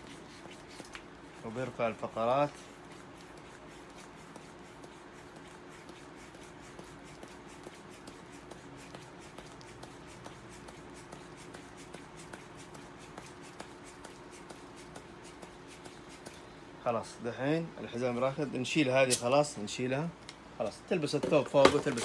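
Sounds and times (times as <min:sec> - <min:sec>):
faint steady hum: 0:00.0 - 0:22.0
soft handling noise: 0:17.7 - 0:22.0.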